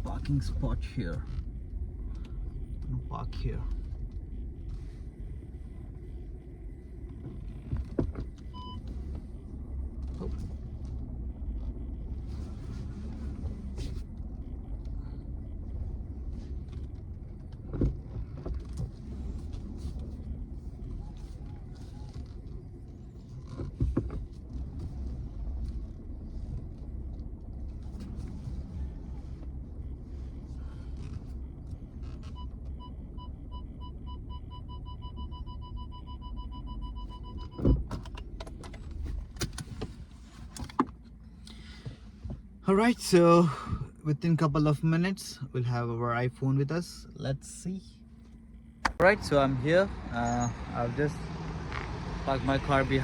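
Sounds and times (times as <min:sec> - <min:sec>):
car rumbling from inside cabin: 0:00.0 - 0:53.0
car warning chime beeping: 0:08.5 - 0:08.8, 0:32.3 - 0:37.7.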